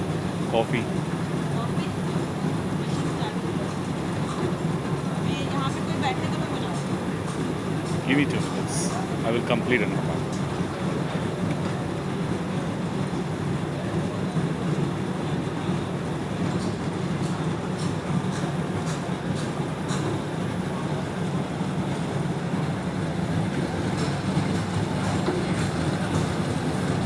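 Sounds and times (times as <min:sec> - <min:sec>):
dishwasher running: 0:23.0 - 0:27.0.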